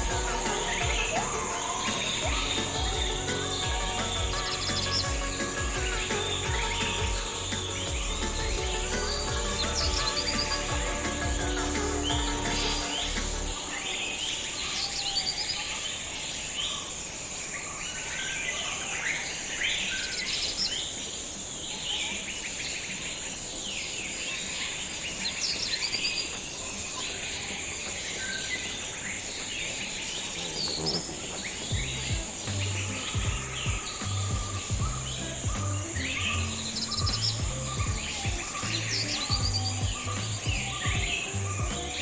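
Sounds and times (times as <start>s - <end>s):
low bass tones: 0.0s - 13.6s, 31.7s - 42.0s
birds chirping and calling: 25.5s - 42.0s.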